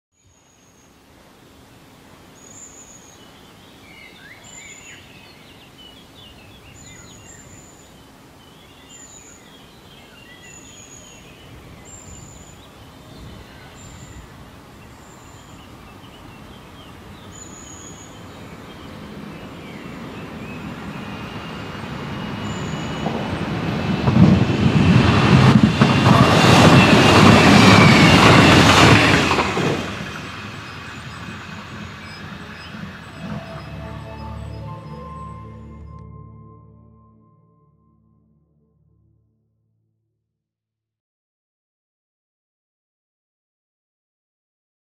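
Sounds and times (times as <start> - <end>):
electric train passing: 18.2 - 37.8
high train squeal: 20.4 - 36.1
birds chirping: 30.1 - 36.2.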